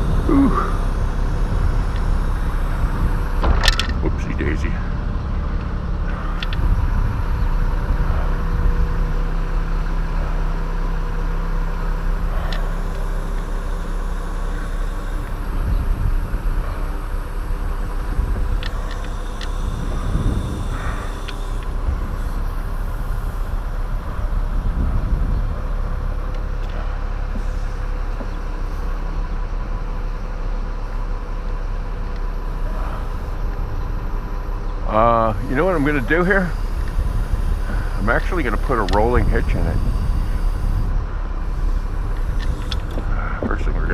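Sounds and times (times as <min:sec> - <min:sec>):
engine humming: 0:00.0 - 0:43.9
low rumble: 0:00.0 - 0:43.9
gear clicks and knocks: 0:03.3 - 0:04.7.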